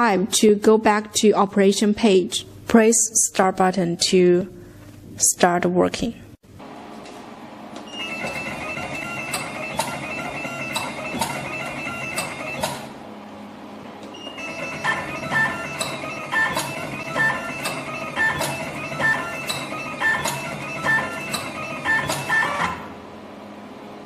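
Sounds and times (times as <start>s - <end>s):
stepper motors whining: 14.4s - 22.8s.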